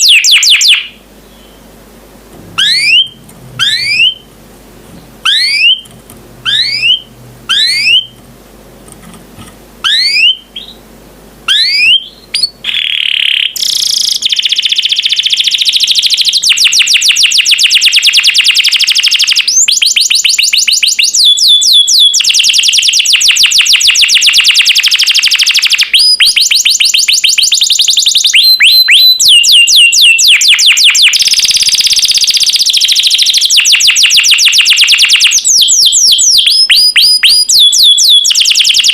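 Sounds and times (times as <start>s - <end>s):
canary singing: 0.0s - 1.8s, 2.5s - 4.3s, 4.9s - 8.2s, 9.8s - 38.9s.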